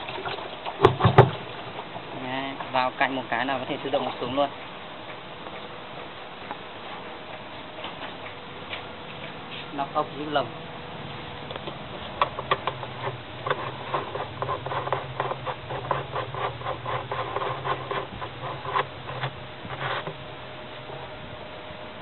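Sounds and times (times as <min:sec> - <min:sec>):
steady low hum: 0:00.0 - 0:22.0
metallic clicks and scraping: 0:11.5 - 0:20.2.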